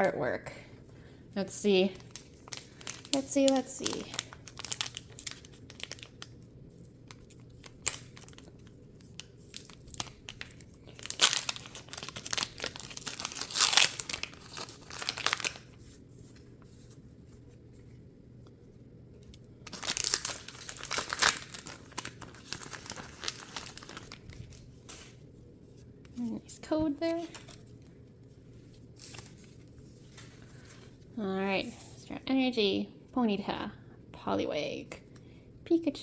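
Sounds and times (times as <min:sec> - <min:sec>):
foil wrapper crinkling and tearing: 0:01.7 - 0:16.9, 0:19.3 - 0:26.3, 0:28.9 - 0:31.0.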